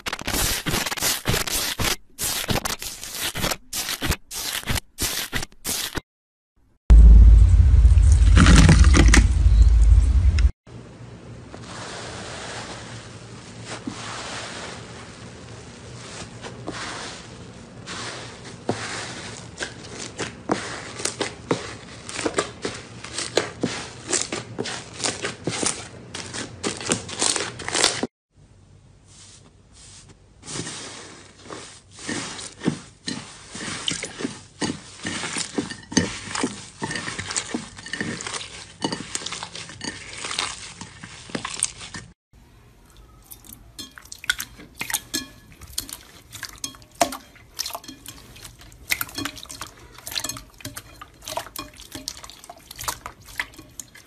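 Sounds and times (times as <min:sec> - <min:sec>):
loud low rumble: 0:06.9 - 0:10.5.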